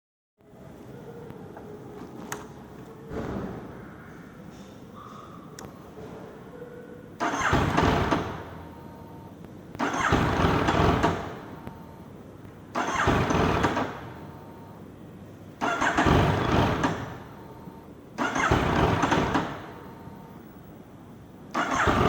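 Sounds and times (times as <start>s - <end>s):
motorcycle starter cranking engine: 7.2s - 8.8s, 9.8s - 11.5s, 12.8s - 14.2s, 15.6s - 17.6s, 18.2s - 20.0s, 21.5s - 22.0s.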